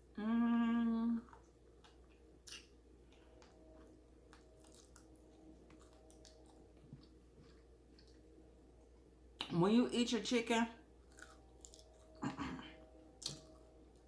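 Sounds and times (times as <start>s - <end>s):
woman humming: 0.0s - 1.3s
soft chewing: 1.1s - 9.5s, 11.0s - 14.0s.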